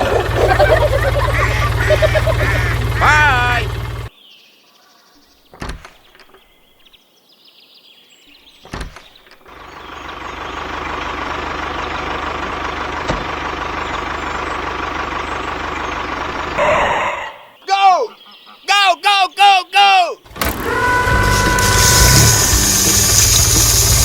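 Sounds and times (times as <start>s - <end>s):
small motor whining: 0.0s - 4.1s, 20.3s - 24.0s
clicks: 20.3s - 24.0s.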